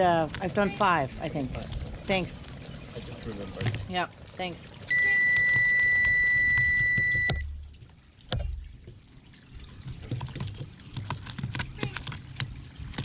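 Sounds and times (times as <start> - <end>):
steady electronic test tone: 4.9 - 7.6.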